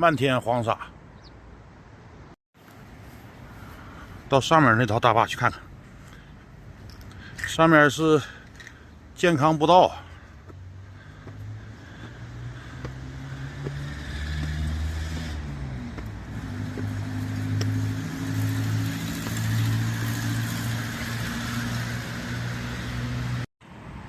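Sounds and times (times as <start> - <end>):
vehicle engine running: 10.0 - 23.4.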